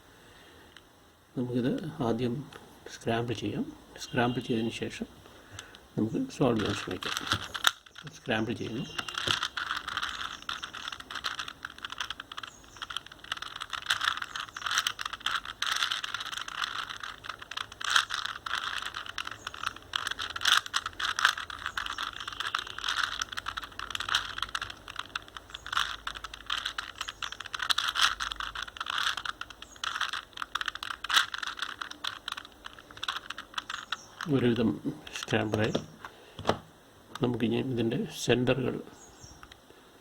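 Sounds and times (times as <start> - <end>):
puzzle cube clicking: 5.5 - 37.5
plastic snaps: 35.1 - 37.5.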